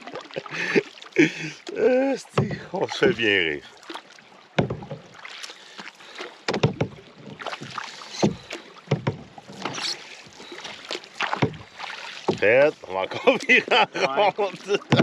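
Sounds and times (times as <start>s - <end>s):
paddles splashing in water: 0.0s - 15.0s
sharp paddle knocks: 4.6s - 5.0s, 6.5s - 7.0s, 7.6s - 9.8s.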